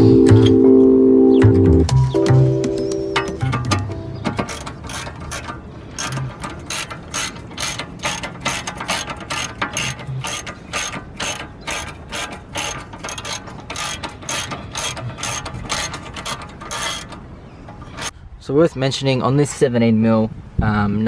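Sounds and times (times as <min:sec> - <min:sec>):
ratchet wrench clicking: 0:04.3 - 0:18.1.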